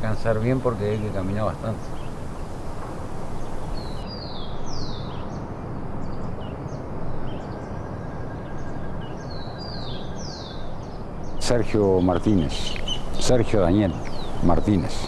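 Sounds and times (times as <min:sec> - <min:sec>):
bird chirps: 0:00.0 - 0:04.0, 0:11.4 - 0:15.0
low background rumble: 0:00.0 - 0:04.0
songbird whistling: 0:00.0 - 0:04.0, 0:12.2 - 0:15.0.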